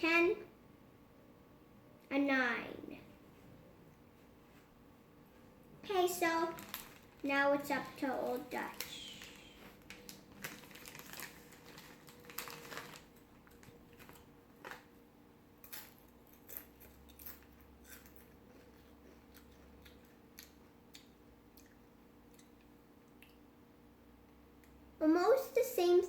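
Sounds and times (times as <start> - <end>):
potato chip crunching: 6.0 - 14.9, 15.6 - 23.4.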